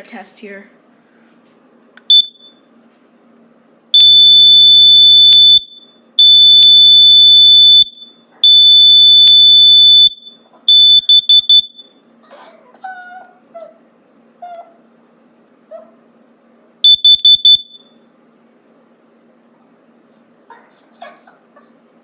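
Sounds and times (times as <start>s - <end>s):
high-pitched alarm beeps: 2.1s - 2.6s, 4.0s - 12.0s, 16.8s - 18.0s
short rapid alarm beeps: 2.1s - 2.6s, 4.0s - 12.0s, 16.8s - 18.0s.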